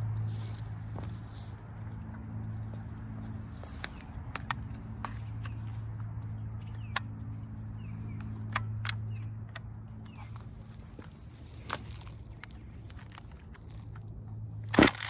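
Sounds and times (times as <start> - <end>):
chainsaw engine idling: 14.7 - 15.0.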